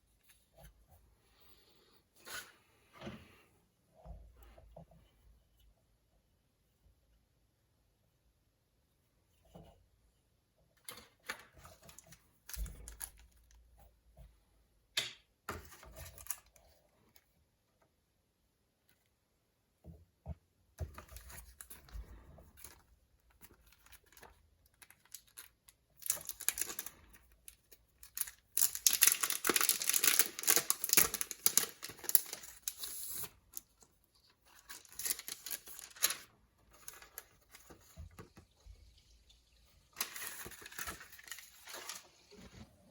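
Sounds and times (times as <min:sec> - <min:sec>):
plastic packaging crinkling and tearing: 0:23.5 - 0:33.8, 0:34.5 - 0:37.9, 0:39.9 - 0:42.6.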